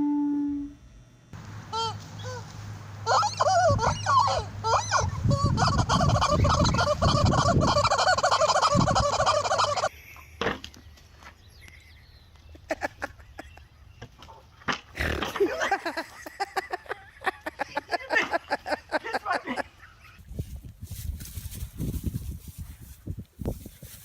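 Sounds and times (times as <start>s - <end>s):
fowl calling in chorus: 3.0s - 9.9s.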